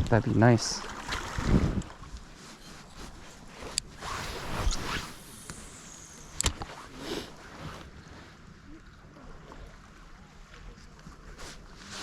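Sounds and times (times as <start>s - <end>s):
handling rustling and swishing: 1.5s - 8.2s.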